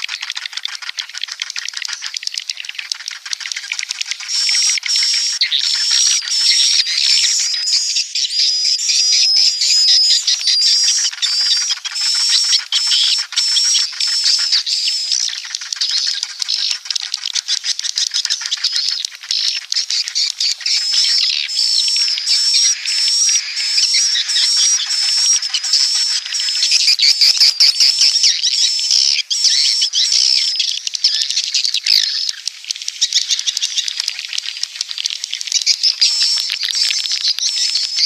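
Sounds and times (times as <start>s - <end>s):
swiftlets chittering: 9.6s - 38.0s.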